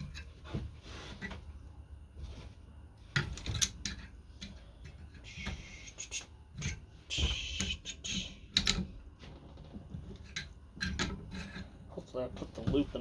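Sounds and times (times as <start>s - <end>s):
hand tools clicking and knocking: 7.5s - 13.0s.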